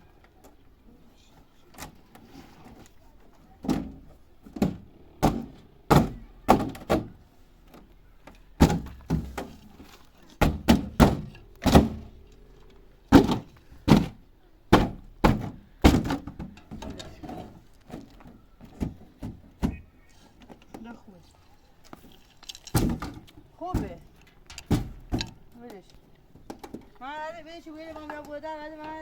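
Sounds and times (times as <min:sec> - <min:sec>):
dull thuds of hand blows: 0:04.5 - 0:07.2, 0:10.4 - 0:12.2, 0:13.1 - 0:16.4.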